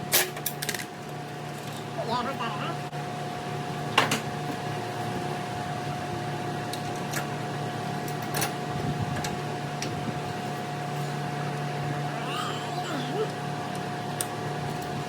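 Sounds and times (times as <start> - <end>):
machine hum: 11.3 - 15.0.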